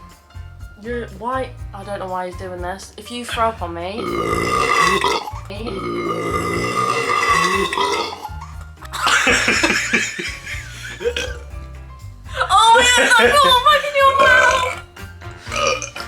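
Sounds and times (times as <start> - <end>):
background music: 0.0 - 16.0
person burping loudly: 4.0 - 10.0, 10.7 - 11.5, 14.2 - 16.0.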